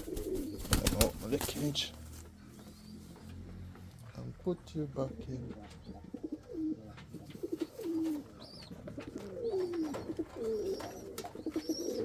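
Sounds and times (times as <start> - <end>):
pigeons cooing: 0.0 - 1.9, 5.1 - 12.0.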